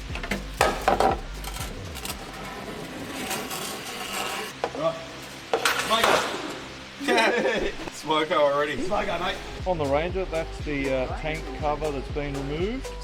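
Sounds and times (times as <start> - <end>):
metal clinks and knocks: 0.0 - 2.2
metal guard scraping: 0.0 - 6.8.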